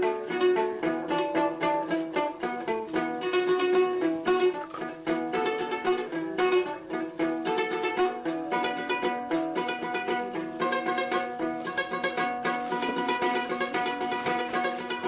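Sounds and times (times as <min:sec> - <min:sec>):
plucked string instrument music: 0:00.0 - 0:15.0.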